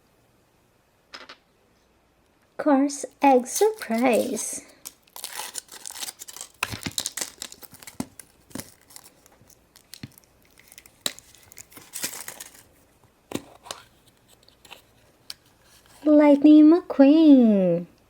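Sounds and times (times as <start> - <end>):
foil wrapper crinkling: 3.2 - 16.1.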